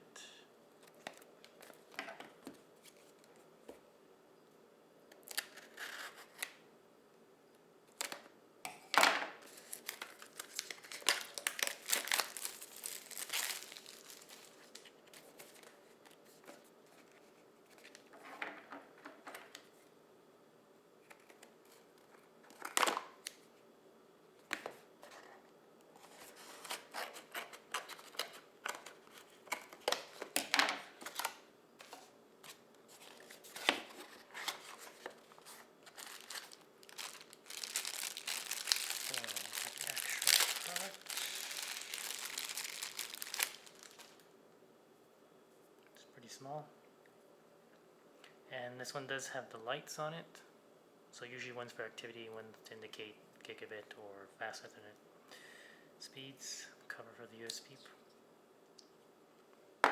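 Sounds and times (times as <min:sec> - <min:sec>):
packaging crinkling and rustling: 0:09.3 - 0:18.1, 0:26.0 - 0:44.3.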